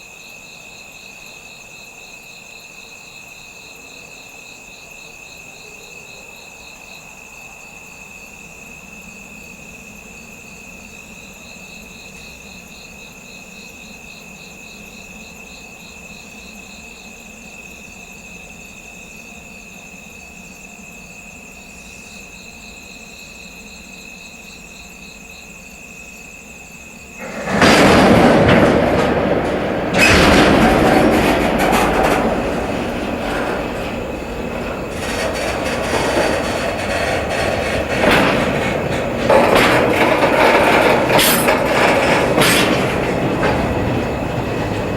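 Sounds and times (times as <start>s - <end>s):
crickets chirping: 0.0s - 44.9s
train passing: 27.2s - 44.9s.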